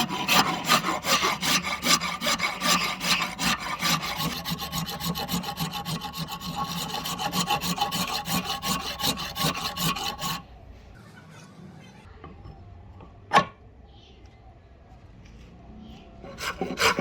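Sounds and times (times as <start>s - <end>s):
hand tool rasping on wood: 0.0s - 10.4s, 16.3s - 17.0s.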